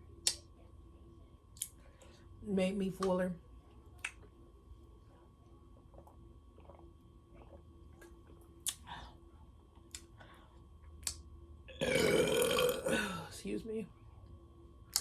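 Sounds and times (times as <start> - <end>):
mouth clicks and lip smacks: 4.0 - 4.3, 7.4 - 8.9, 11.0 - 11.2.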